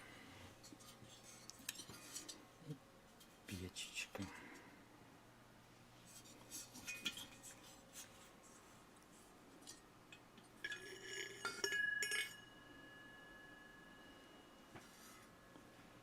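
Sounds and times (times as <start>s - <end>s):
lingering metallic ring: 10.6s - 14.7s.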